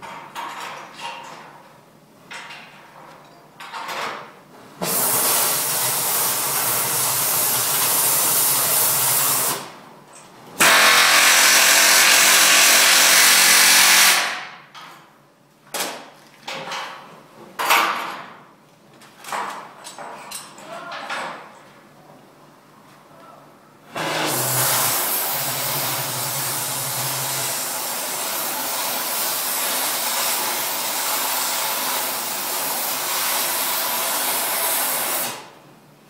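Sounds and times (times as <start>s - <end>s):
power tool running: 10.6s - 14.6s, 23.9s - 35.5s.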